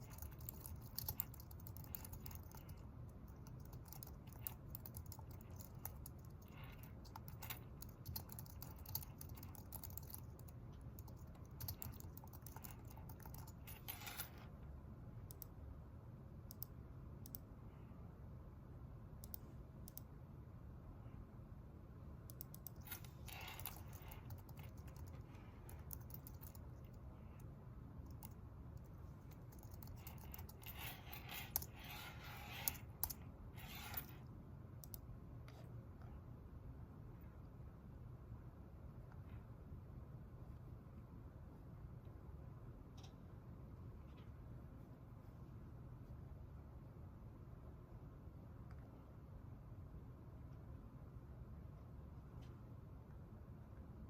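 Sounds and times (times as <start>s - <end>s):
computer keyboard typing: 0.0s - 14.3s, 22.3s - 34.1s
low room hum: 0.0s - 54.0s.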